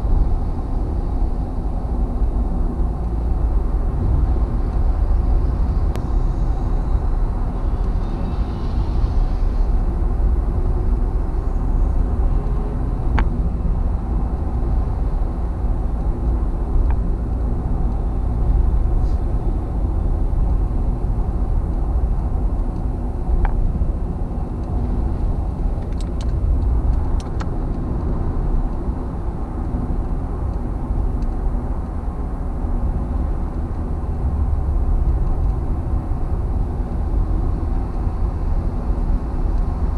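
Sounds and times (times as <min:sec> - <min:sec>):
car cabin road rumble: 0:00.0 - 0:39.9.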